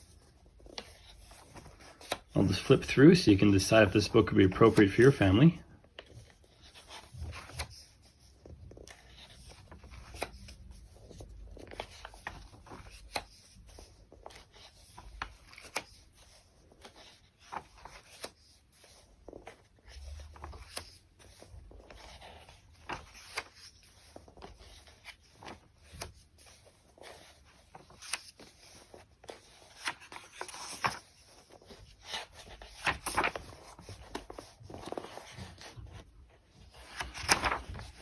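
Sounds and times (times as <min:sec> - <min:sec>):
book pages turning: 0:00.0 - 0:38.0
paper handling taps: 0:32.7 - 0:36.1, 0:36.8 - 0:38.0.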